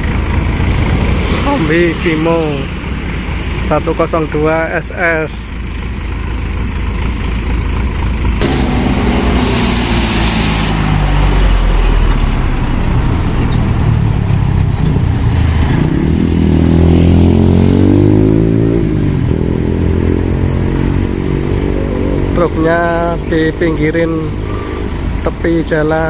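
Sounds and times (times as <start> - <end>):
diesel truck engine revving: 7.2 - 25.4
loud hiss: 8.4 - 10.9.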